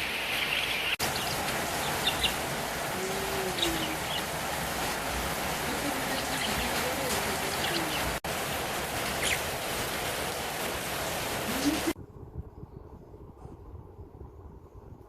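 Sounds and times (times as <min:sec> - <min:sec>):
budgies chirping: 0:00.0 - 0:08.2, 0:09.0 - 0:10.0
steady rain hiss: 0:00.0 - 0:12.0.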